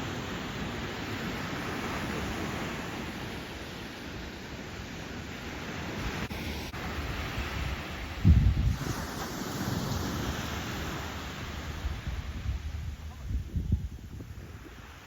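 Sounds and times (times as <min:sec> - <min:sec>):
surf breaking on beach: 0:00.0 - 0:15.0
wind buffeting microphone: 0:05.4 - 0:15.0.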